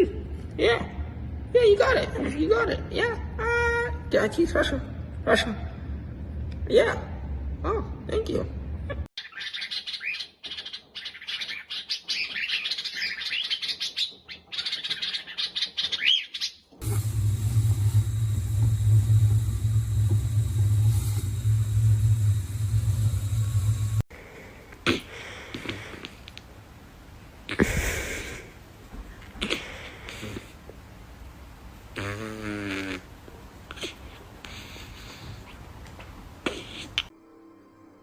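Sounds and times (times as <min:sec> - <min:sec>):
bird chirping and twittering: 0:09.2 - 0:16.7
loud low hum: 0:16.8 - 0:24.1.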